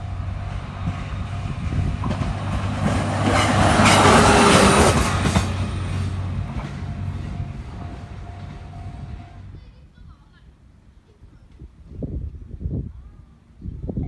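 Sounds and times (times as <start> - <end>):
train passing close by: 0.0 - 9.6.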